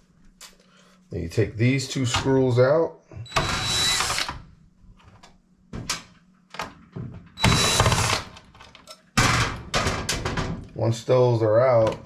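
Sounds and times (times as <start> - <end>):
cordless drill running: 3.3 - 4.4, 7.4 - 8.3.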